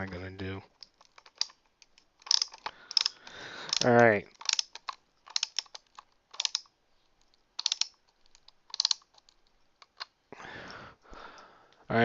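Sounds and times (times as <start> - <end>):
screwdriver clicking on screws: 0.8 - 10.1.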